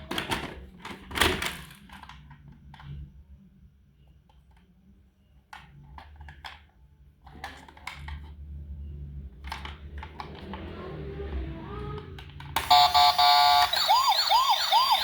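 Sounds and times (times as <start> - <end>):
toy cars clicking and knocking: 5.5 - 8.4, 9.3 - 10.8.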